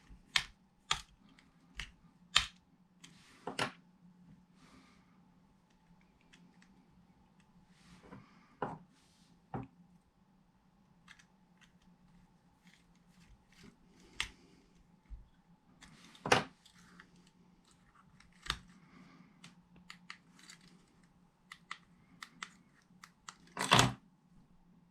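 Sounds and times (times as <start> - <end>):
faint steady hum: 0.0 - 24.9.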